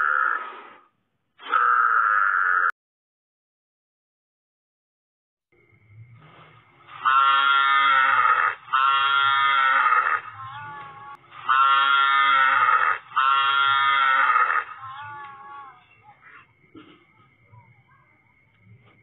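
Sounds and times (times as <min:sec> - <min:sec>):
animal drawn-out pitched call: 0:00.0 - 0:00.8, 0:01.4 - 0:02.7, 0:06.9 - 0:16.4.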